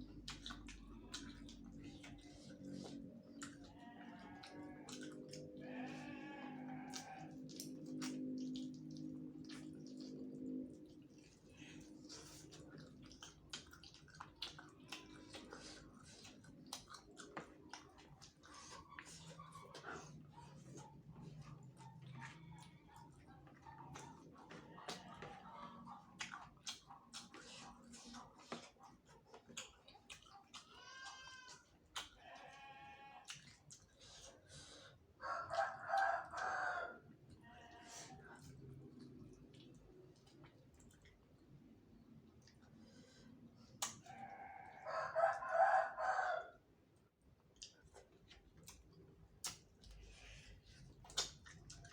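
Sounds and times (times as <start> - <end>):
wet chewing and lip-smacking: 0.0 - 46.0, 46.6 - 51.9
rooster crowing: 35.2 - 37.0, 44.1 - 46.6.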